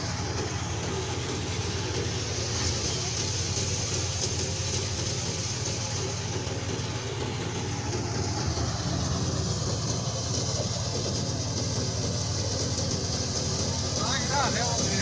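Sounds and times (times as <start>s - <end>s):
thresher machine running: 0.0s - 15.0s.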